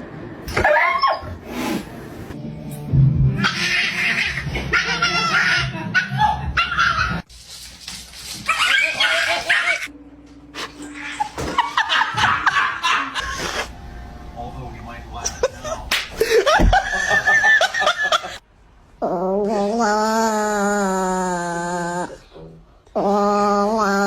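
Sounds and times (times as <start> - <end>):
dog yipping and whimpering: 0.6 - 1.4.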